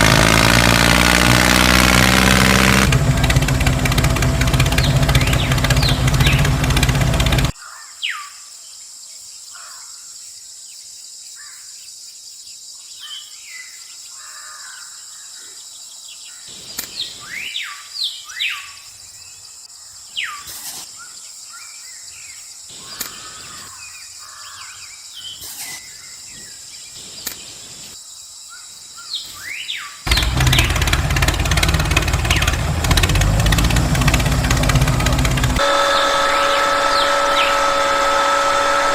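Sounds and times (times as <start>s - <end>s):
loud engine-like running noise: 0.0s - 7.5s, 30.1s - 38.9s
birds chirping: 0.0s - 8.3s, 28.6s - 38.9s
steady high hiss: 26.3s - 28.3s.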